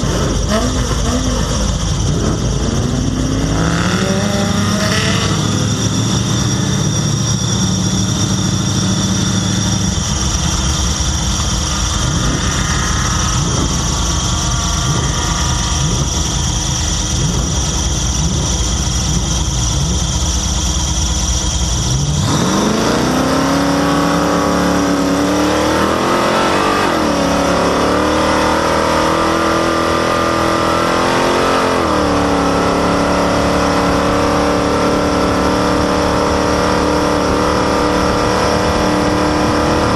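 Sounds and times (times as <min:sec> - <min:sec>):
squeaky belt whining: 0:00.0 - 0:22.2
vehicle engine running: 0:00.0 - 0:39.9.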